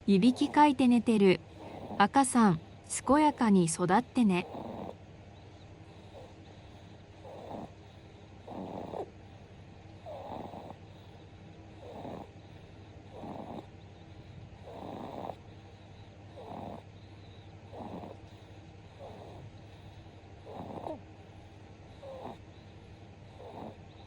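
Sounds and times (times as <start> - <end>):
baby snoring: 0.2 - 0.8, 1.4 - 5.0, 5.9 - 9.1, 10.0 - 24.0.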